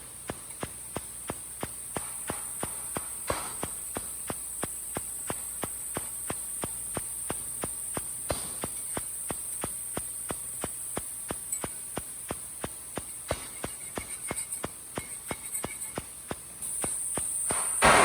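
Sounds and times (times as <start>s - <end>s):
welding arc hissing and ticking: 0.0s - 18.0s.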